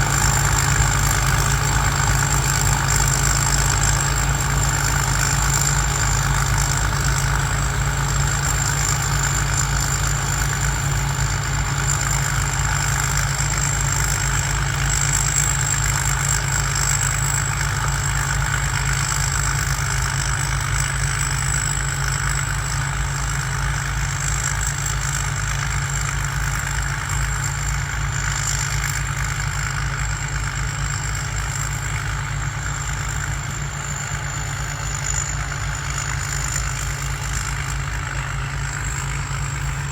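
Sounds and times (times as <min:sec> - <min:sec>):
diesel engine running: 0:00.0 - 0:39.9
high turbo whistle: 0:32.6 - 0:39.9.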